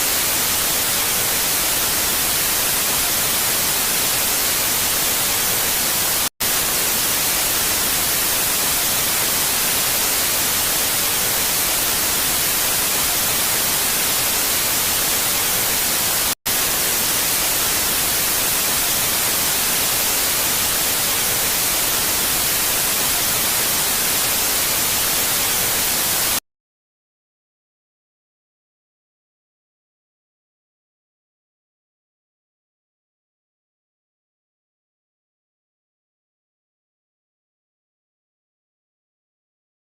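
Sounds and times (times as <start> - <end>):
loud static hiss: 0.0 - 26.4.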